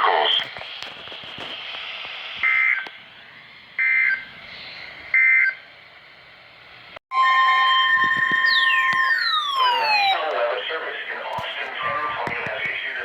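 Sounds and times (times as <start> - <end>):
warbling digital data tones: 7.2 - 10.2
faint radio hiss: 10.2 - 13.0.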